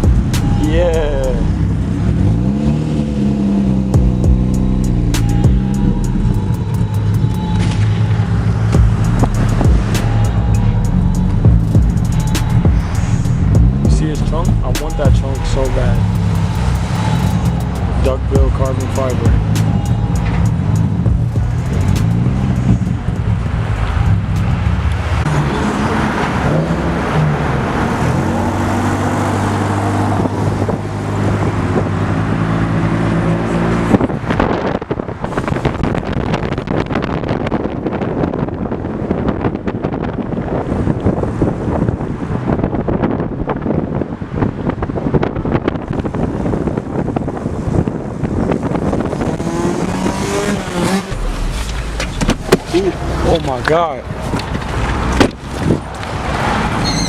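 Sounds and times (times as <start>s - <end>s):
car engine and exhaust running: 0.0s - 57.0s
road and wind noise: 0.0s - 57.0s
short pitched tones: 4.0s - 22.7s.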